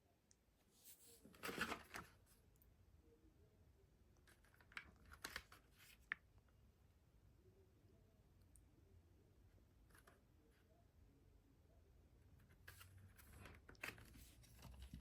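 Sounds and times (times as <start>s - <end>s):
cd case rustle: 1.2s - 2.1s, 4.3s - 6.1s.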